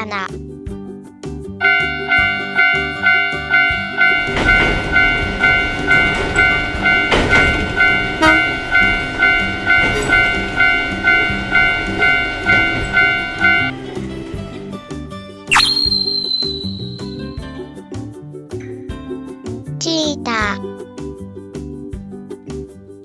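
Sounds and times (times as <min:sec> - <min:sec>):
railroad crossing bell dinging: 0:01.6 - 0:14.4, 0:15.6 - 0:17.6
train rushing past: 0:01.6 - 0:15.1.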